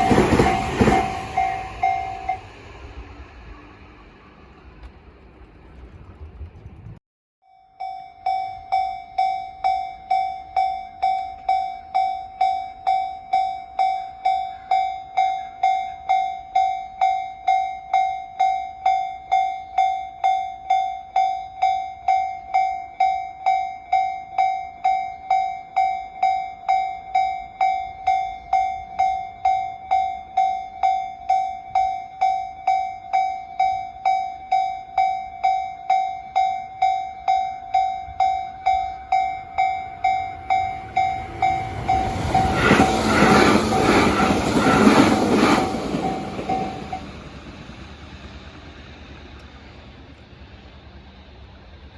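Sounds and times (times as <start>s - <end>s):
electronic level-crossing bell: 0.0s - 2.6s, 7.4s - 44.4s.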